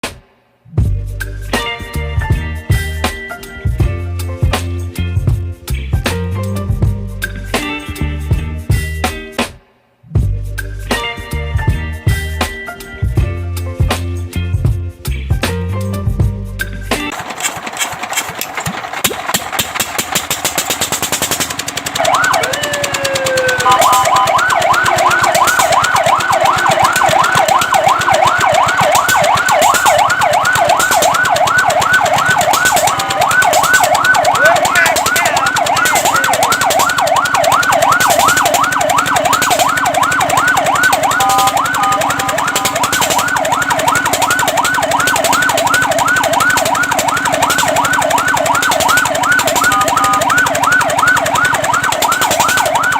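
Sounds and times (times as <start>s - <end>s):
fast mechanical clatter: 17.1s - 52.9s
fire truck siren wailing and yelping: 17.1s - 52.9s.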